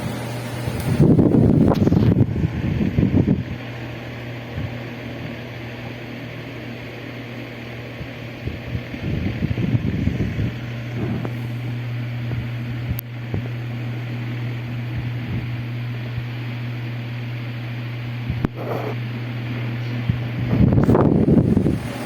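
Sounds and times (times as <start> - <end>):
fan switch click: 0.0 - 3.5
fan motor hum: 0.0 - 22.0.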